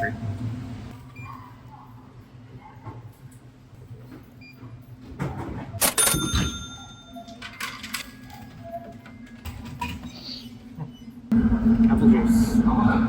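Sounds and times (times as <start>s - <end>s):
coins clattering: 5.8s - 8.6s.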